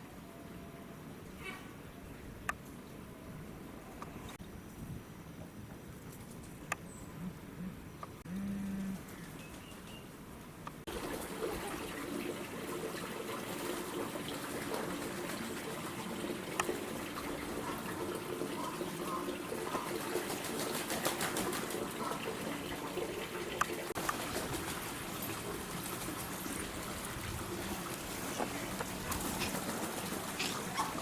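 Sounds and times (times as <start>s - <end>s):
running water: 10.9s - 31.0s.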